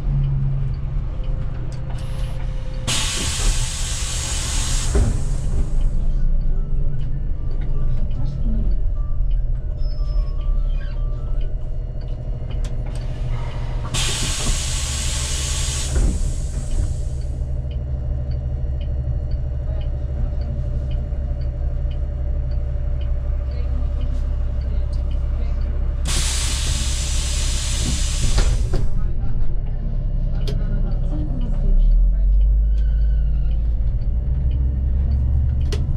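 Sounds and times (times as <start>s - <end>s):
bus diesel engine running: 0.0s - 35.9s
compressed air hiss: 2.9s - 5.8s, 13.9s - 17.2s, 26.1s - 28.7s.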